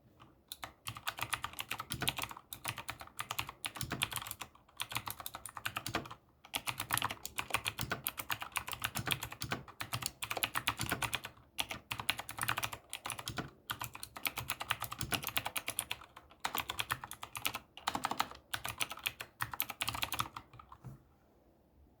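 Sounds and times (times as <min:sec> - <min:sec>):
mechanical keyboard typing: 0:00.5 - 0:20.8.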